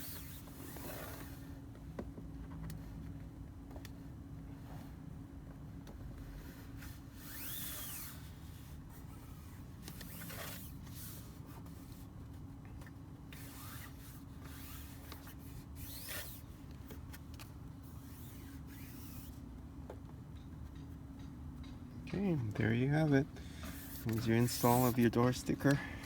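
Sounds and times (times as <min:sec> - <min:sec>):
steady low hum: 0:00.0 - 0:26.0
plastic card scraping over sticker: 0:23.7 - 0:25.8.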